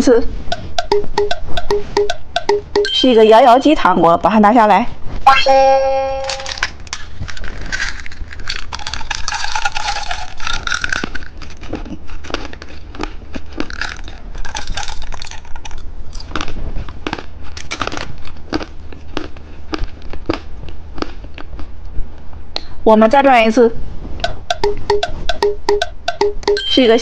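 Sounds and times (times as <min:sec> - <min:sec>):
plastic packaging crinkling: 0:06.3 - 0:11.8.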